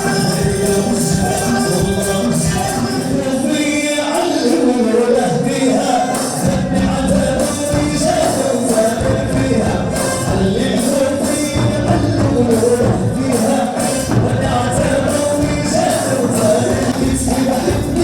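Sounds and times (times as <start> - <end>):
tambourine jingles: 0.0 - 3.1
hand percussion beat: 0.0 - 3.6, 4.2 - 18.0
person singing: 0.0 - 18.0.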